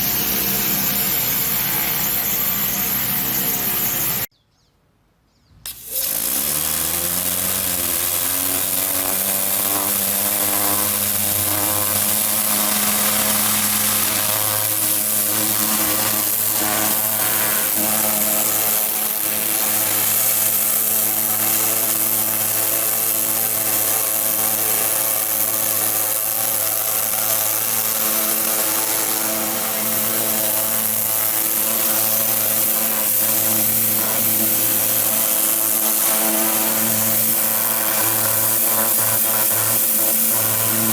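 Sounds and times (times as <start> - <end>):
pressure washer engine running: 0.0 - 4.3, 5.7 - 40.9
high-pressure water spray hiss: 5.7 - 40.9.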